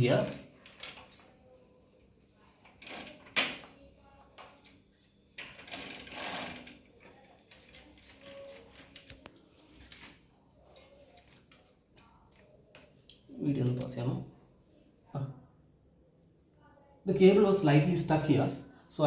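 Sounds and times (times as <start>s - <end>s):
bike drivetrain rattling whirr: 5.6s - 6.8s.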